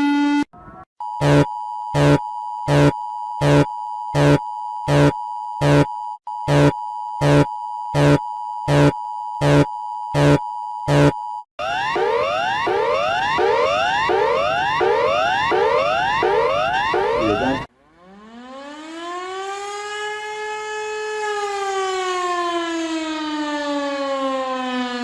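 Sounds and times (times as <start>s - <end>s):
pulsing alarm beep: 1.0s - 17.7s
buzzy alarm tone: 1.2s - 17.7s.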